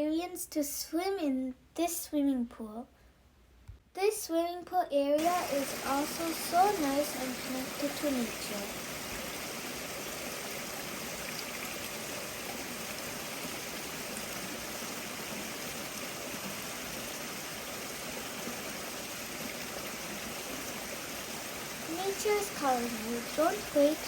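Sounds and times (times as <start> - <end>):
creek water rushing: 5.2 - 24.0.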